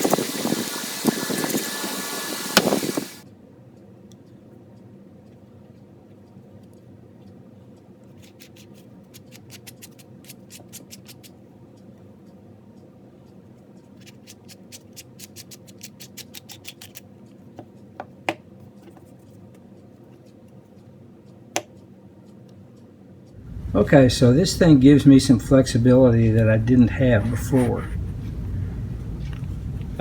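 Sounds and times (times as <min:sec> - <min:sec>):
fan humming: 0:00.0 - 0:03.2, 0:17.1 - 0:30.0
rapid light metal clicks: 0:04.0 - 0:23.7.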